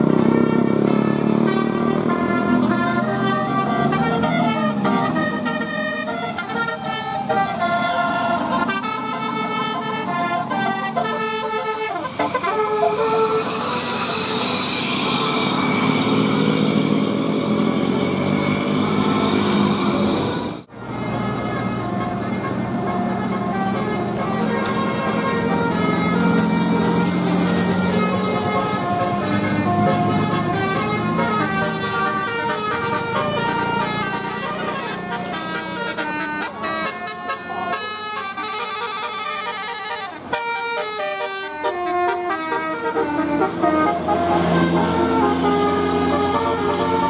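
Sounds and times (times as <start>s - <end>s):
vehicle engine running: 0.0s - 36.6s
multi-tone air horn melody: 0.0s - 47.0s
road and tyre noise: 0.0s - 47.0s.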